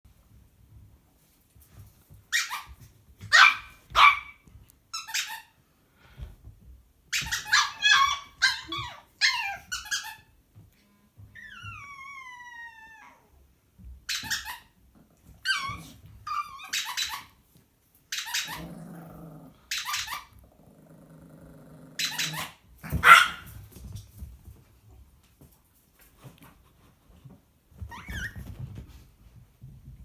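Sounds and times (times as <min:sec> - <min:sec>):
small dogs barking: 0:03.3 - 0:04.4, 0:22.0 - 0:23.5
squeaky toy squeak: 0:05.0 - 0:05.5, 0:07.1 - 0:10.3, 0:14.1 - 0:14.7, 0:15.4 - 0:17.4, 0:18.1 - 0:18.6, 0:19.7 - 0:20.3, 0:22.0 - 0:22.6
dog growling: 0:18.5 - 0:19.7, 0:20.4 - 0:22.6.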